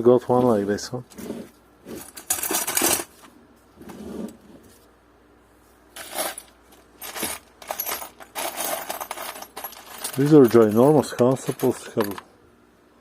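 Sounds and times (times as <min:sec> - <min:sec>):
metal bolts and screws clinking: 0:01.9 - 0:03.1, 0:06.0 - 0:12.3.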